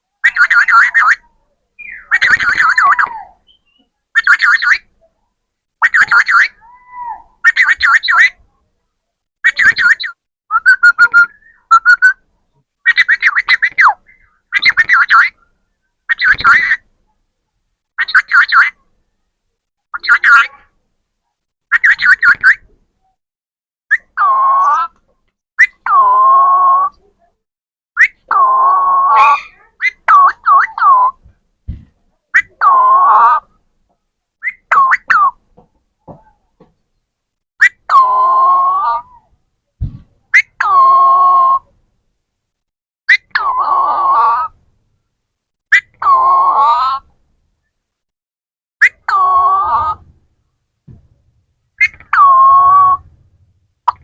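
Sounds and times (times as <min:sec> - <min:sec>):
parrot chattering and whistling: 0:00.2 - 0:04.9, 0:09.5 - 0:12.2, 0:21.7 - 0:22.6, 0:28.0 - 0:31.2, 0:34.4 - 0:35.4.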